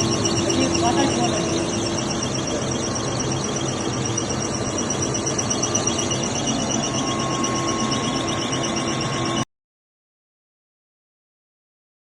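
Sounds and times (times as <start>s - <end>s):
high-pitched machine whine: 0.0s - 9.5s
processing machinery drone: 0.0s - 9.5s
steady tone: 0.0s - 9.5s.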